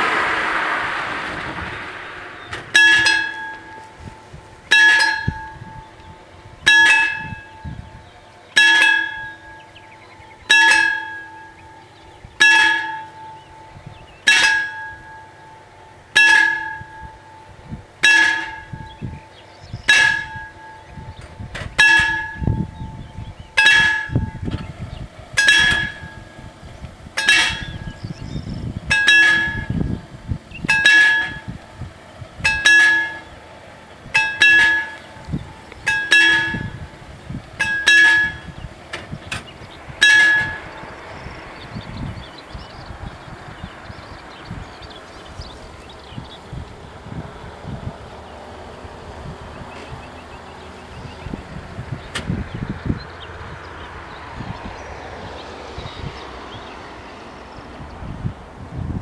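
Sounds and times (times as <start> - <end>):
faint low rumble: 0.0 - 6.7
level-crossing warning bell: 2.7 - 24.8, 25.4 - 38.9, 39.5 - 46.6.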